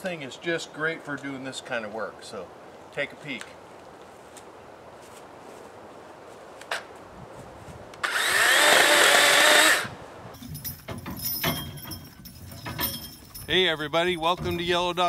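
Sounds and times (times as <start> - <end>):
electric chainsaw motor whining: 8.0 - 9.9
crackles and knocks: 10.4 - 15.0.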